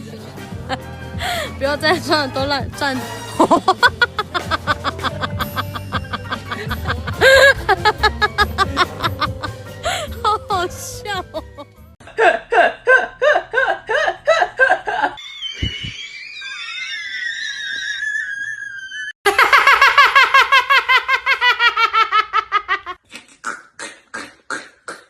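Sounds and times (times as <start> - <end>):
person laughing uncontrollably: 3.4 - 16.9, 18.8 - 23.4.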